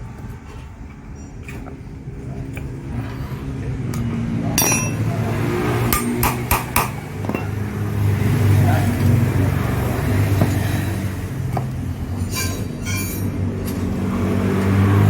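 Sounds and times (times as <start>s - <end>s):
hammer striking metal: 4.6s - 5.2s, 5.9s - 7.6s, 12.3s - 13.3s.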